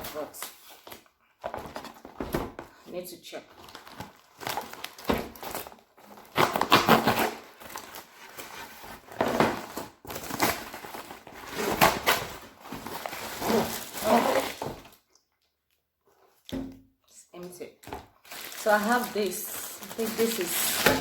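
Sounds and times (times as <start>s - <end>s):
packaging crinkling and rustling: 3.4s - 15.0s, 17.8s - 21.0s.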